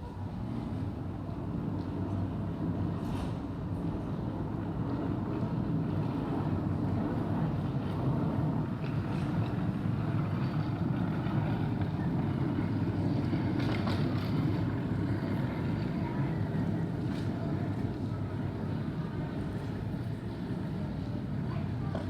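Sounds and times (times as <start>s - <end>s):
faint clicks and clatter: 4.9s - 22.0s.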